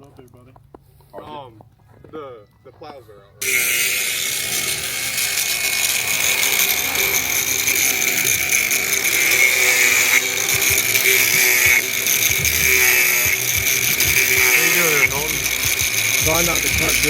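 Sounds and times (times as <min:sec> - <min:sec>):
power tool cutting with whine: 0:03.4 - 0:17.0.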